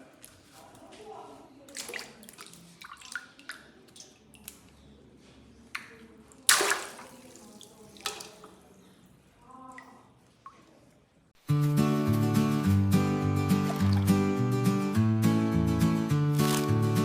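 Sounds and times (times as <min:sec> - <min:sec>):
water dripping and splashing: 0:01.7 - 0:04.8, 0:05.7 - 0:08.8, 0:09.7 - 0:10.9, 0:13.6 - 0:14.2
plastic bag clicks: 0:16.4 - 0:16.7.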